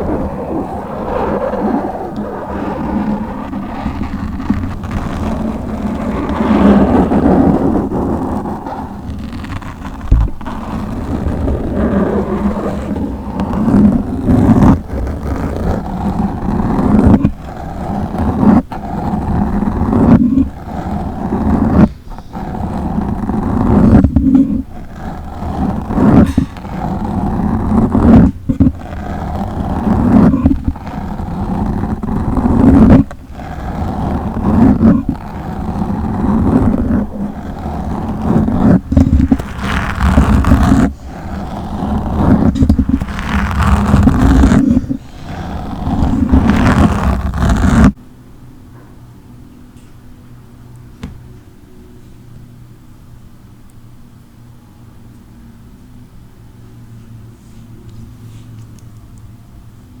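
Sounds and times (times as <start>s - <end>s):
microphone being scratched: 0.0s - 48.0s
pops and crackles: 0.0s - 48.0s.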